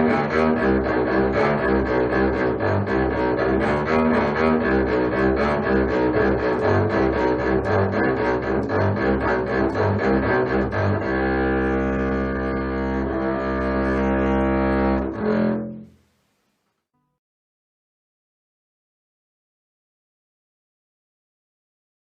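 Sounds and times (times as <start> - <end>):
low bowed string instrument: 0.0 - 16.0.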